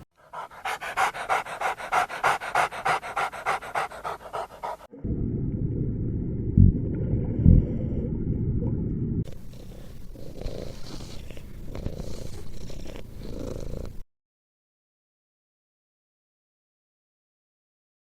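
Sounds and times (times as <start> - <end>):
dog panting: 0.1 - 4.9
low rumble: 4.9 - 9.3.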